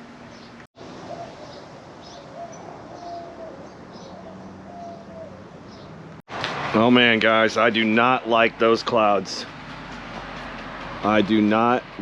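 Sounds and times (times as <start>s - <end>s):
birds chirping: 0.0s - 6.2s
doves cooing: 0.9s - 6.0s.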